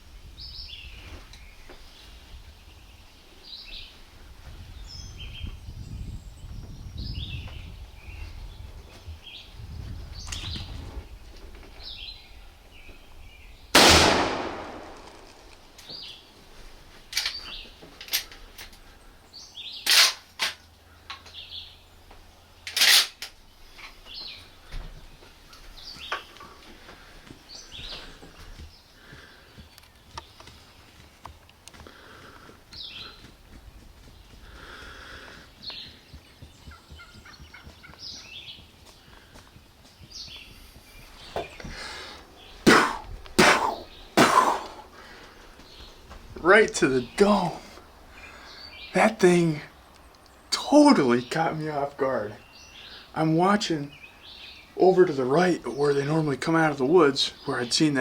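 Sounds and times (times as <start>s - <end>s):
songbirds chirping: 0.0s - 58.0s
shotgun blast echoing: 13.8s - 15.5s
sharp thumps and cracks: 13.8s - 16.0s, 42.7s - 44.8s.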